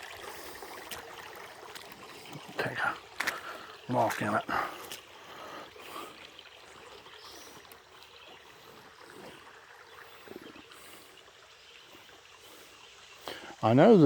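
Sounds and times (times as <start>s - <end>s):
small splash: 0.0s - 5.1s
creek water trickling: 0.0s - 14.0s.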